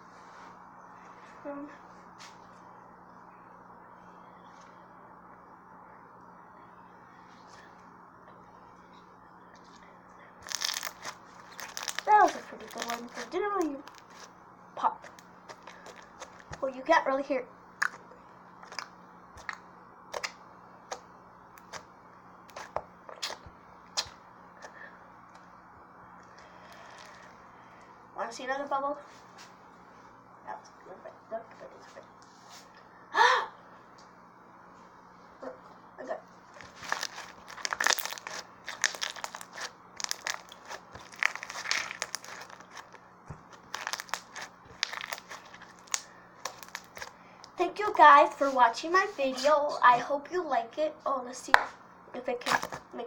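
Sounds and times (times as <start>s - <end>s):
slime squished in hands: 10.4s - 14.3s, 36.6s - 47.6s
slime clicking and popping: 36.9s - 42.7s.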